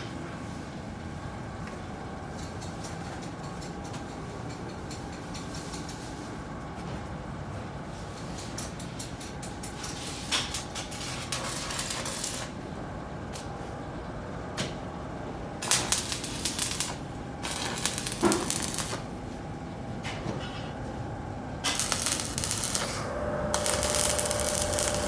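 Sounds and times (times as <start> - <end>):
electric arc welding crackling: 10.5 - 12.6, 15.6 - 19.2, 21.6 - 25.0.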